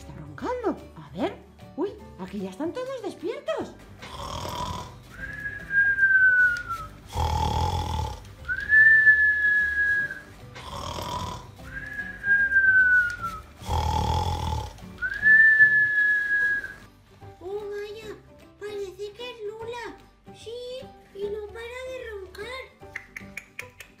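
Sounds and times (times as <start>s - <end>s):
cartoon snoring: 4.0s - 5.0s, 7.0s - 8.3s, 10.6s - 11.6s, 13.6s - 14.8s.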